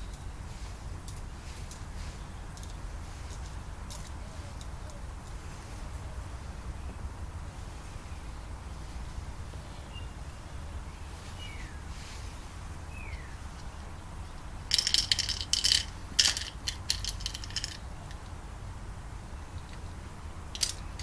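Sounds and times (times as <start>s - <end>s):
small metal parts clinking: 2.5s - 4.7s, 14.7s - 18.2s, 20.5s - 21.0s.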